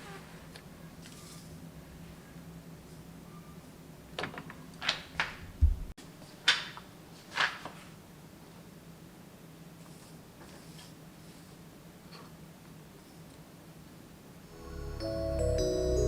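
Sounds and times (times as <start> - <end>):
dull low thump: 5.6 - 5.9.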